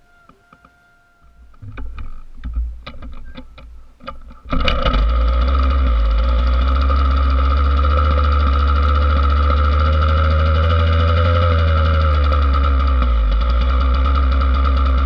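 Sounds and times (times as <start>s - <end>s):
engine being kicked over: 4.1s - 10.5s
two-stroke engine running: 4.5s - 15.0s.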